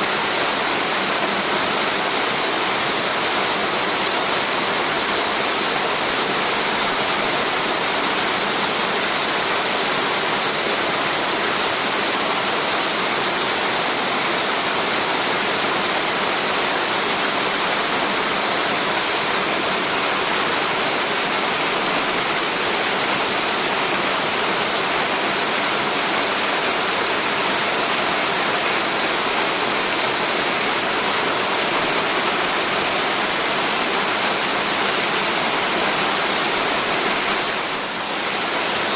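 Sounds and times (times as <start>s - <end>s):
waterfall rushing: 0.0s - 38.9s.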